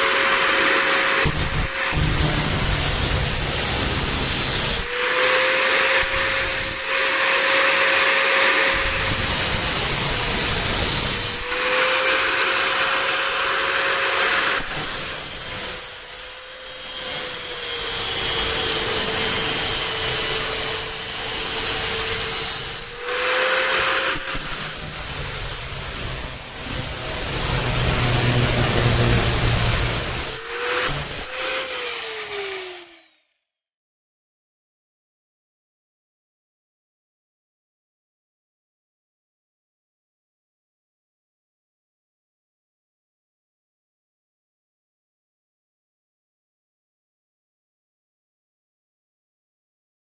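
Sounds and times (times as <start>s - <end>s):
electric power tool motor: 0.0s - 33.4s.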